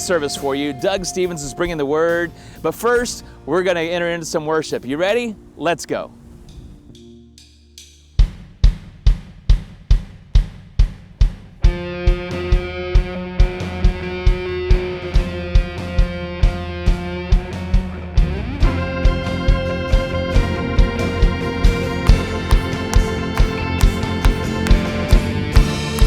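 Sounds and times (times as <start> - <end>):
band playing sustained chords: 0.0 - 7.6, 11.9 - 26.0
kick-drum beat: 8.1 - 19.6, 20.8 - 26.0.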